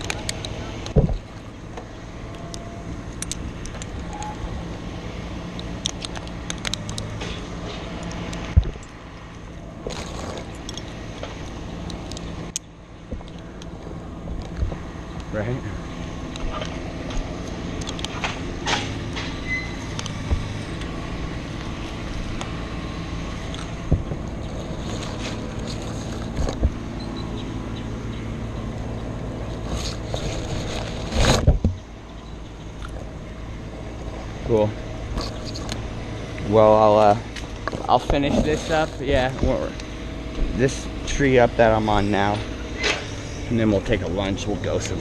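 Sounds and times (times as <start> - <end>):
engine running: 0.0 - 45.0
clicks: 16.3 - 19.3.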